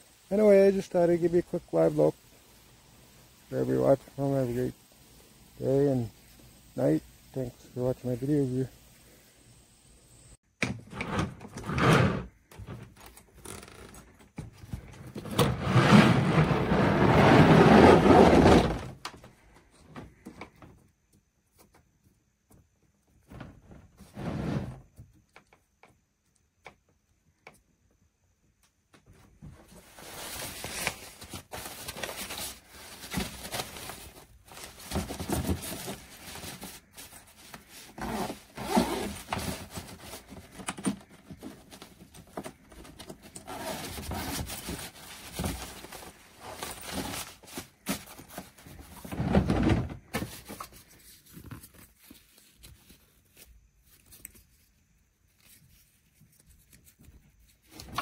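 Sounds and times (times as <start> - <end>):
handling rustling: 29.6 - 58.0.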